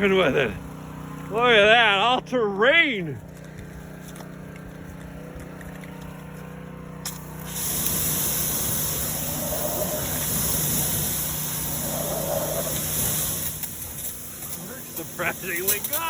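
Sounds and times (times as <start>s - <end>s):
pressure washer humming: 0.0s - 16.0s
water spraying from nozzles: 4.4s - 16.0s.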